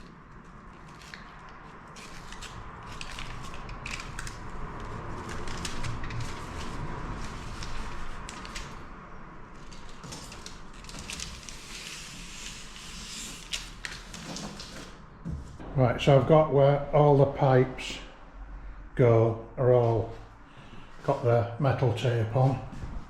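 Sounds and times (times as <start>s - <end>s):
foil tape crinkling: 0.0s - 8.9s, 9.6s - 15.0s.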